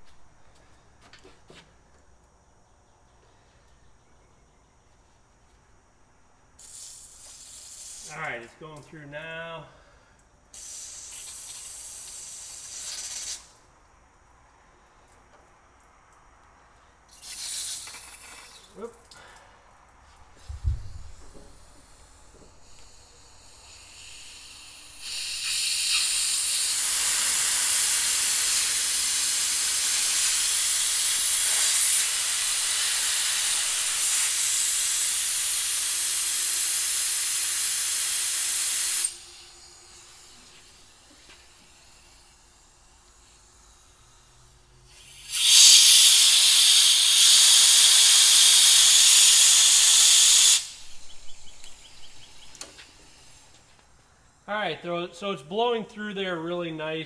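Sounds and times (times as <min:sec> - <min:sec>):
pressurized air hissing: 0:06.6 - 0:08.4, 0:10.5 - 0:13.7, 0:17.1 - 0:18.8, 0:20.3 - 0:53.8.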